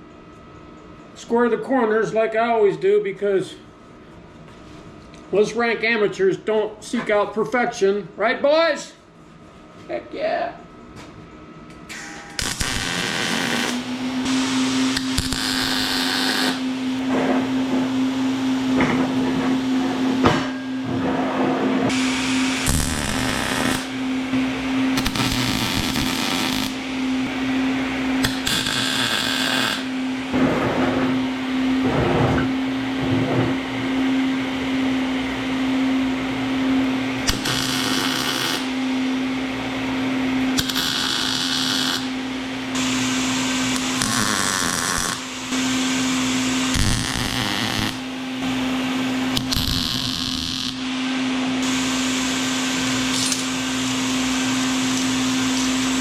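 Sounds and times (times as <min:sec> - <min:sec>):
steady hum: 0:00.0 - 0:56.0
welder crackling bursts: 0:11.9 - 0:16.7, 0:21.9 - 0:24.0, 0:24.9 - 0:26.9, 0:28.2 - 0:29.9, 0:37.2 - 0:38.8, 0:40.5 - 0:48.7, 0:49.3 - 0:50.8.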